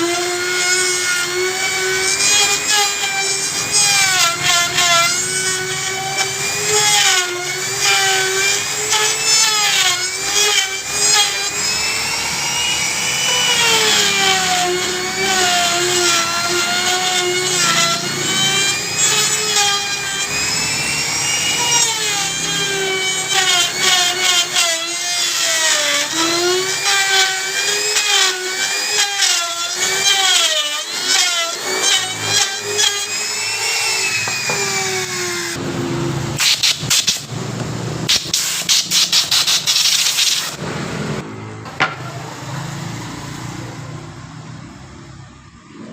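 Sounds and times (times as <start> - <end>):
power drill boring into wood: 0.0 - 35.6.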